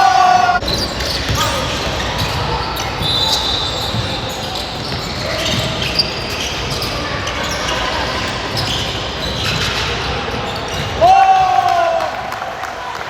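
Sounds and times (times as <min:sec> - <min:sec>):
sneaker squeaks: 0:00.6 - 0:11.1
basketball bouncing on court: 0:00.7 - 0:06.9.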